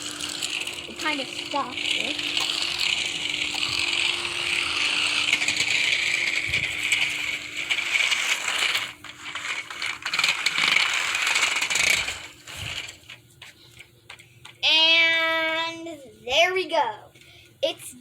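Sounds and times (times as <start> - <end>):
gear clicking rattle: 0.0 - 14.6
toy car electric motor whine: 0.0 - 15.6.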